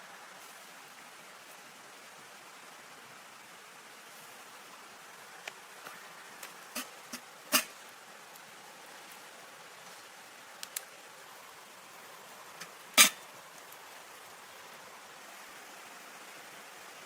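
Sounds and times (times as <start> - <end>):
steady background hiss: 0.0 - 17.0
faint clicks: 10.6 - 11.0.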